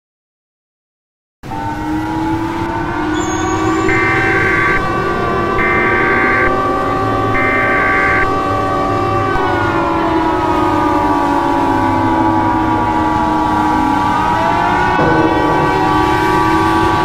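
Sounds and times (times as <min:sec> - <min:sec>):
sirens sliding in pitch: 0:01.4 - 0:17.0
horn-like tones: 0:03.1 - 0:08.7, 0:13.6 - 0:17.0.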